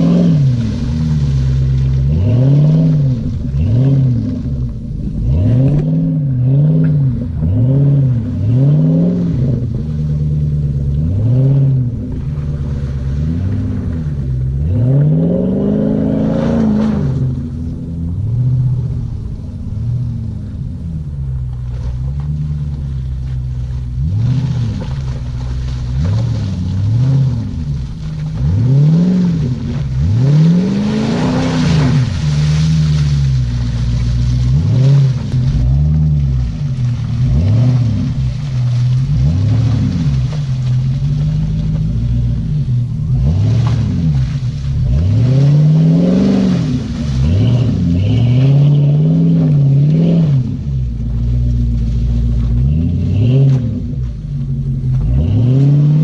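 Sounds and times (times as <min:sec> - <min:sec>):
car engine revving hard: 0:00.0 - 0:56.0.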